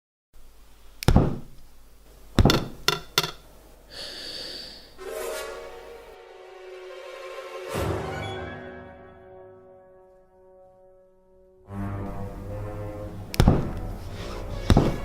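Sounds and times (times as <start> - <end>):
knocks: 2.4 - 3.4
held musical tone: 5.0 - 14.6.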